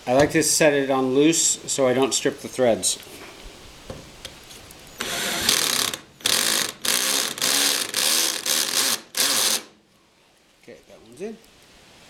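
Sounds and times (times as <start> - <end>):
screw gun driving screw into metal: 5.0 - 9.7.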